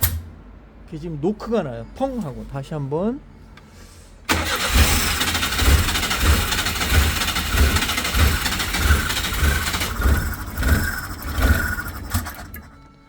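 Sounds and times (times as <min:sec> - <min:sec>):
truck engine running roughly: 0:04.3 - 0:12.8.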